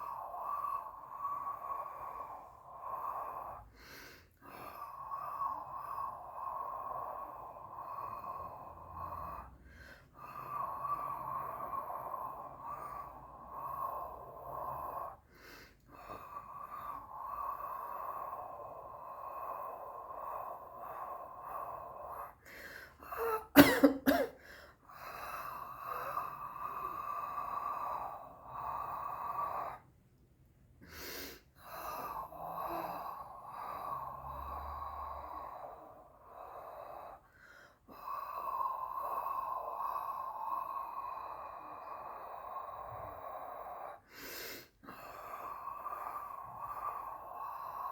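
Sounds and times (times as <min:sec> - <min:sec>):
woman coughing: 0:23.3 - 0:24.4.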